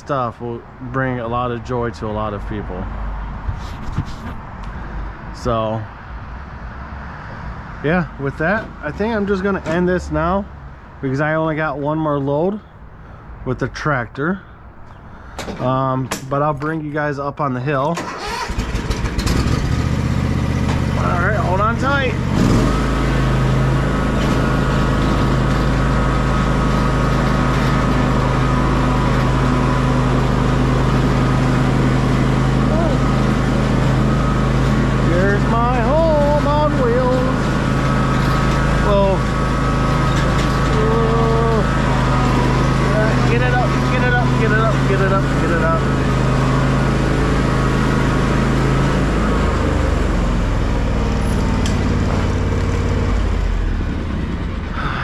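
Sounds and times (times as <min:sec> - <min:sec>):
tractor engine running: 0:17.8 - 0:55.0.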